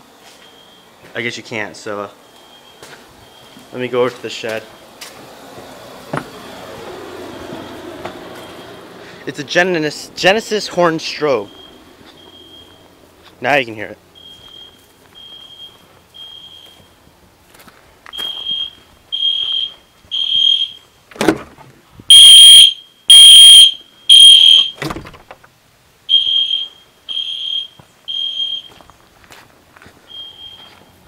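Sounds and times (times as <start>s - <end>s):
fire alarm horn blasts: 11.3s - 12.8s, 18.2s - 20.8s, 22.1s - 24.8s, 26.1s - 28.7s.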